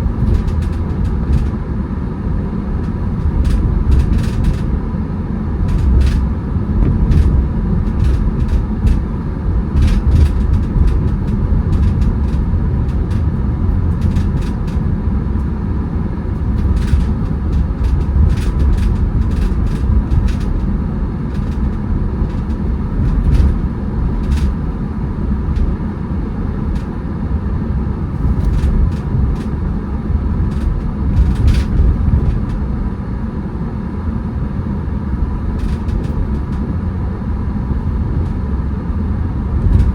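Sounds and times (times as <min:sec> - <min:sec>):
road and engine rumble: 0:00.0 - 0:39.9.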